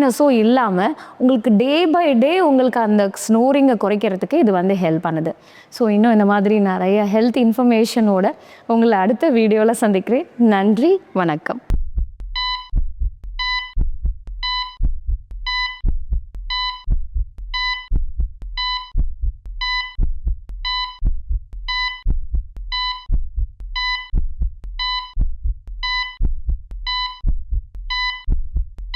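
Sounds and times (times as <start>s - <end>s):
low thumping pulses: 11.7s - 28.9s
electronic beeps: 12.4s - 12.7s, 13.4s - 13.8s, 14.4s - 14.8s, 15.5s - 15.8s, 16.5s - 16.9s, 17.6s - 17.9s, 18.6s - 18.9s, 19.6s - 20.0s, 20.6s - 21.0s, 21.7s - 22.1s, 22.7s - 23.1s, 23.8s - 24.1s, 24.8s - 25.2s, 25.8s - 26.2s, 26.8s - 27.2s, 27.9s - 28.3s.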